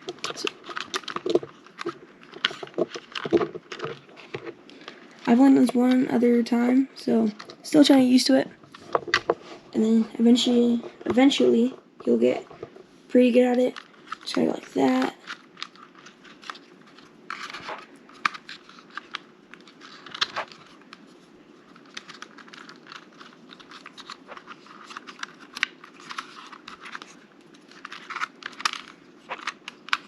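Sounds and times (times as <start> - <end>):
plastic parts clicking and tapping: 0.0 - 5.0, 21.7 - 30.0.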